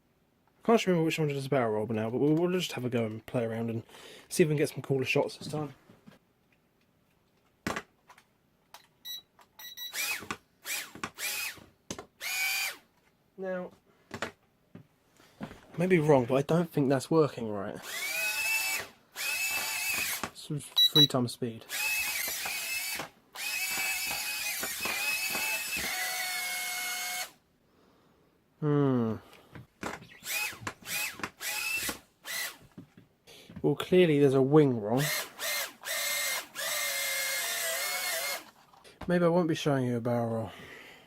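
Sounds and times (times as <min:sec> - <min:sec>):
short electronic beeps: 0:09.0 - 0:10.0, 0:20.8 - 0:21.1.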